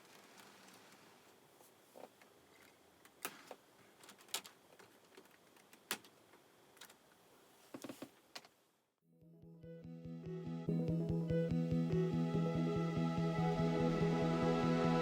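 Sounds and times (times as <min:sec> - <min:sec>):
quiet hiss: 0:00.0 - 0:09.0.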